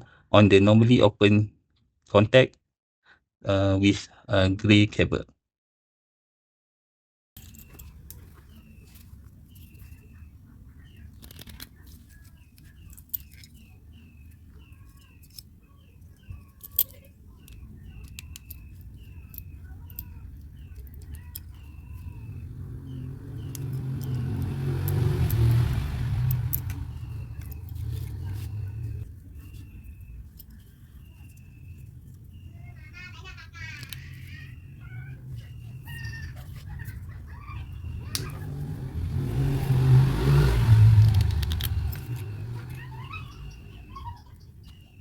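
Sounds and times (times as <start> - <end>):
bird chirping: 7.4 - 45.0
vehicle passing: 17.9 - 31.4, 34.1 - 44.4
sharp clicks: 40.5 - 43.5.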